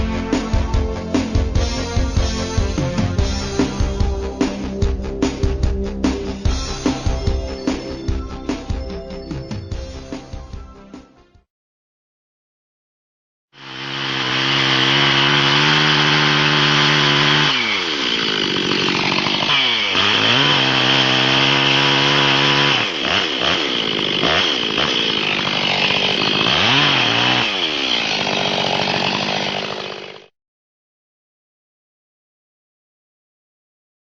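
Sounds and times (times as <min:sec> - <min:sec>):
chainsaw cutting log: 0:13.6 - 0:30.3.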